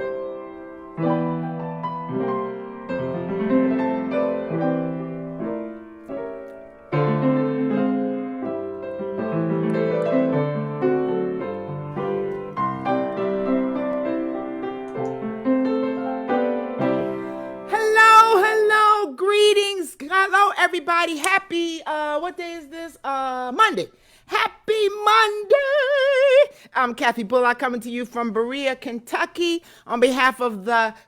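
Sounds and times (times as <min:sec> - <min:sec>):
solo piano melody: 0:00.0 - 0:17.8.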